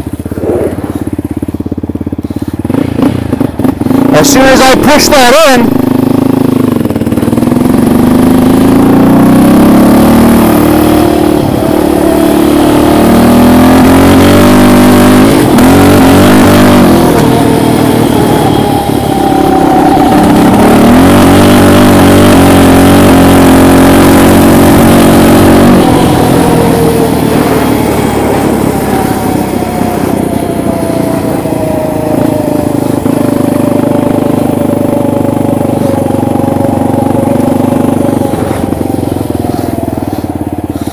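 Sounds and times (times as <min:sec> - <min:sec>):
quad engine revving: 0:00.0 - 0:01.3, 0:02.2 - 0:40.9.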